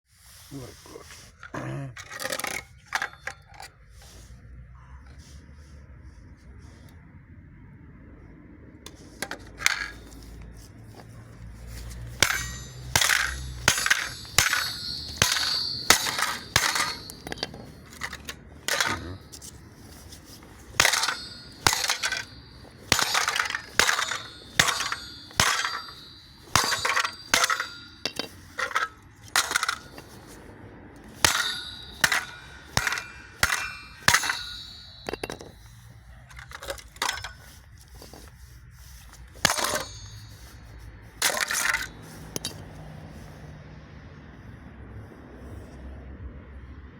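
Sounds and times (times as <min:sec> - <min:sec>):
sharp metallic clinks: 0:09.5 - 0:38.3, 0:39.1 - 0:42.7.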